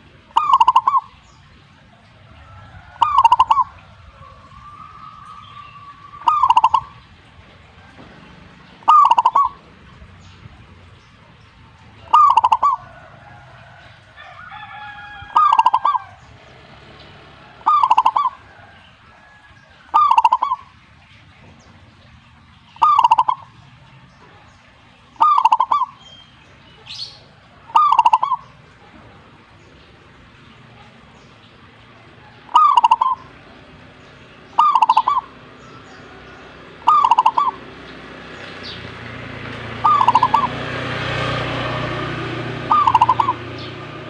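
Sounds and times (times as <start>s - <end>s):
dove cooing: 0.0s - 1.2s, 1.9s - 10.2s, 11.8s - 16.4s, 17.2s - 20.7s, 22.8s - 24.5s, 25.1s - 26.1s, 26.8s - 29.4s, 32.0s - 38.1s, 38.8s - 44.0s.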